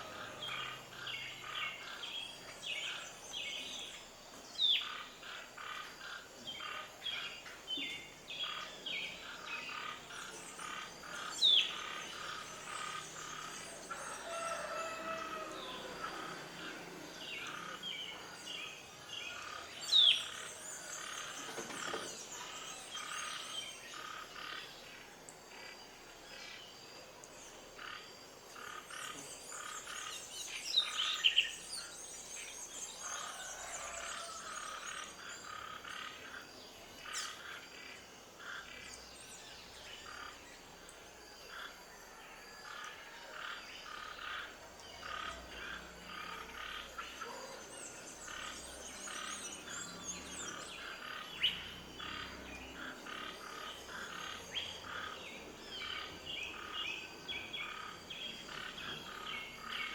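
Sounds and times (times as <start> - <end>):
birds chirping: 0.0 - 42.2
frogs calling in rapid pulses: 8.4 - 18.4, 41.4 - 59.9.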